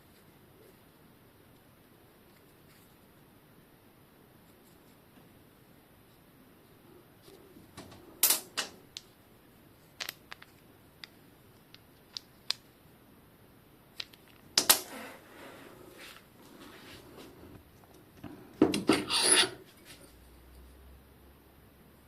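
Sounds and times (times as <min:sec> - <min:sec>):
soft rubbing: 0:14.9 - 0:17.6.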